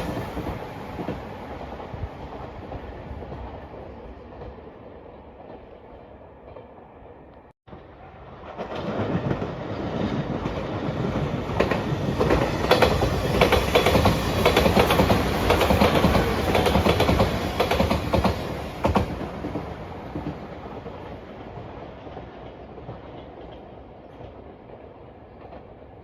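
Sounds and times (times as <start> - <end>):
train rumbling past: 0.0 - 26.0
wheels clacking over rail joints: 8.4 - 24.7.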